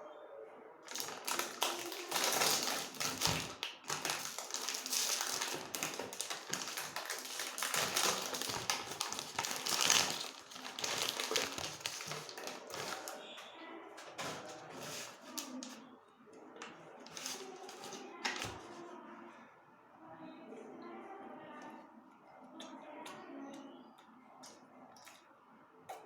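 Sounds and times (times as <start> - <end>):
food packaging crackling: 0.8 - 13.4, 14.0 - 15.8, 17.0 - 18.8.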